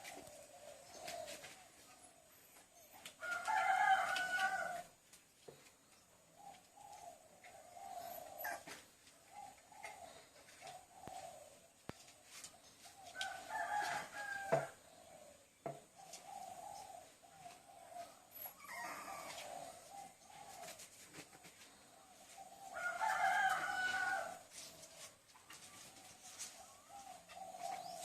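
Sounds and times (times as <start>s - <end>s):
soft cooing calls: 0.0s - 5.0s, 6.2s - 28.0s
rooster crowing: 3.2s - 4.9s, 13.2s - 14.8s, 22.7s - 24.4s.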